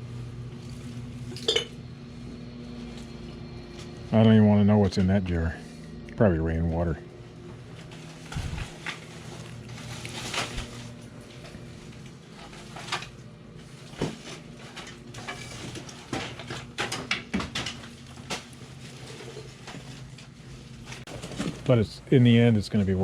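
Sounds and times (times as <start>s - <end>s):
low steady hum: 0.0s - 23.0s
objects knocking and clattering: 14.0s - 20.2s.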